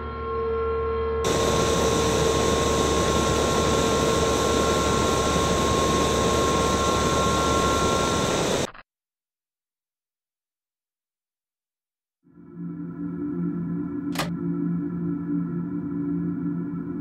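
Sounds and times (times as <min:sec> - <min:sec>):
spacecraft roar: 0:01.3 - 0:08.7
steady hum tones: 0:01.3 - 0:08.7.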